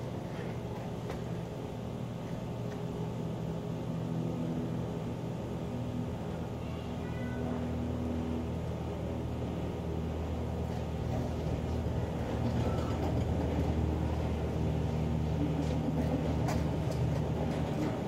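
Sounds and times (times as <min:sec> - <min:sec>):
low engine rumble: 0:00.0 - 0:18.0.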